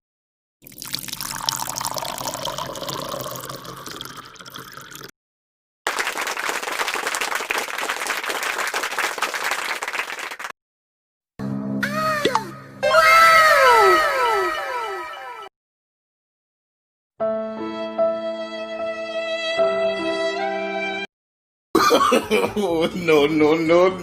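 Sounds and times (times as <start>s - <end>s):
water-like noise with faint tones: 0.7s - 5.1s.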